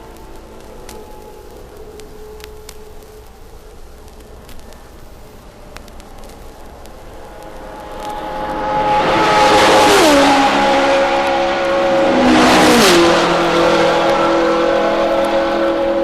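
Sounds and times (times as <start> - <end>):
racing cars passing at speed: 7.1 - 16.0.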